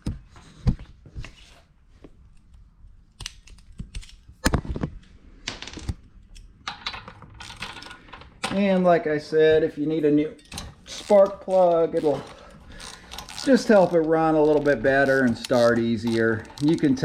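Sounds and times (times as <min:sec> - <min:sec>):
metal tools clinking: 0:10.1 - 0:17.0.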